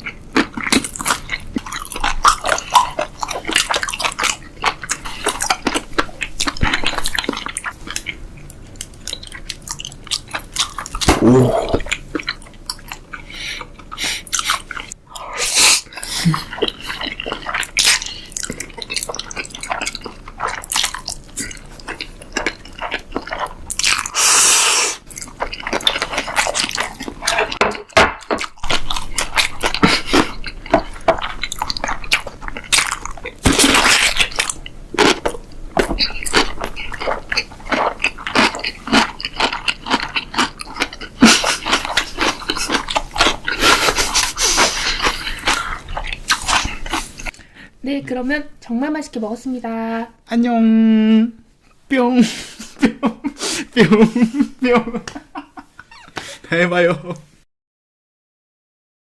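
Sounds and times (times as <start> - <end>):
person chewing and crunching: 0.0 - 47.4
wet mouth clicks: 10.8 - 12.8.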